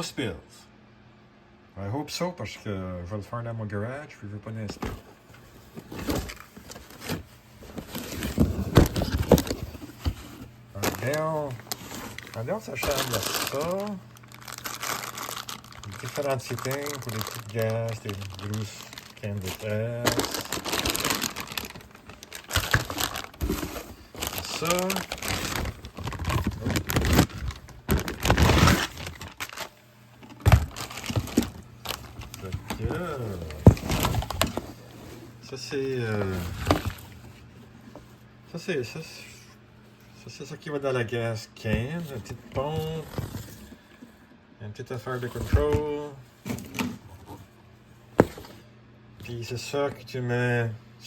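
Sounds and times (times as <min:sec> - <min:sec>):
cardboard box being opened: 0:05.8 - 0:29.7, 0:30.4 - 0:34.8
plastic packaging crinkling: 0:05.8 - 0:34.9, 0:35.8 - 0:37.2.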